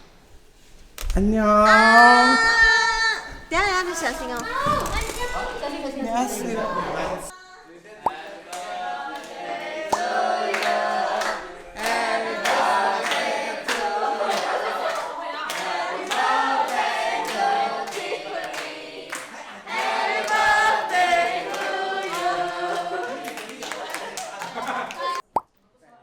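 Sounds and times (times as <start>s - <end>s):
group singing unaccompanied: 1.7s - 7.3s, 8.0s - 25.2s
hands clapping: 8.5s - 25.3s.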